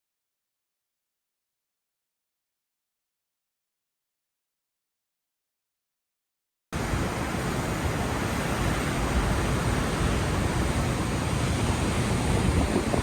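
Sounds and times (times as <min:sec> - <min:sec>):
ocean surf: 0:06.8 - 0:13.0
wind on microphone: 0:06.8 - 0:13.0.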